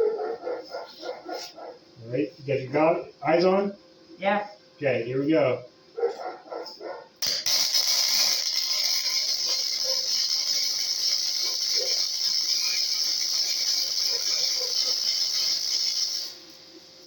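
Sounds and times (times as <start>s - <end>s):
arc welding crackling hiss: 7.2s - 17.0s.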